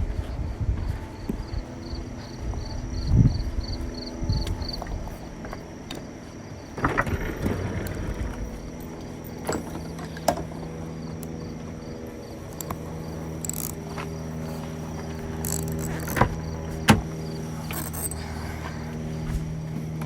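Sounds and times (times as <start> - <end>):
low steady hum: 0.0 - 20.0
insects chirping: 0.2 - 20.0
hand tools clinking and knocking: 8.7 - 10.7, 12.5 - 18.6.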